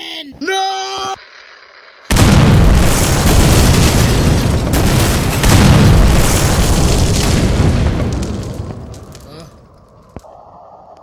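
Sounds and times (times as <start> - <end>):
explosion blast rumbling: 2.1 - 9.7.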